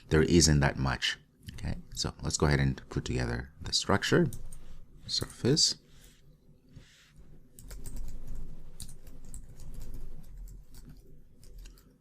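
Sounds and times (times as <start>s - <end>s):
computer keyboard typing: 7.5s - 12.0s.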